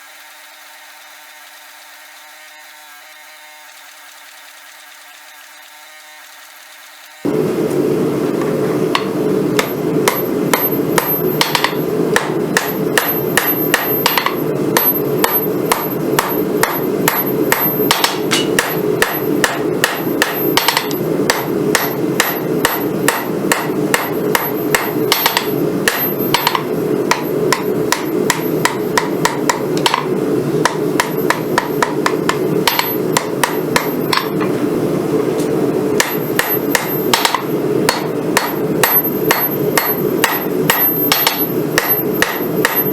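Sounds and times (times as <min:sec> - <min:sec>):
low steady hum: 0:07.3 - 0:42.9
hammer striking hot metal: 0:08.4 - 0:34.6, 0:35.4 - 0:42.9.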